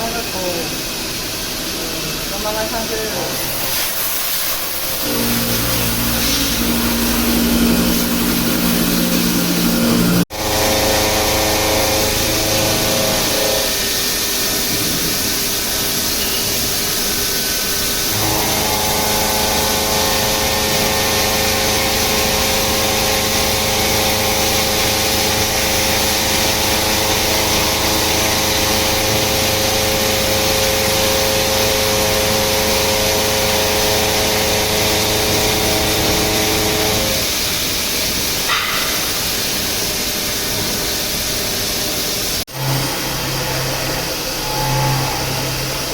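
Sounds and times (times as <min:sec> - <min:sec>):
coolant spray hiss: 0:00.0 - 0:42.4
whining machine tones: 0:04.6 - 0:13.9.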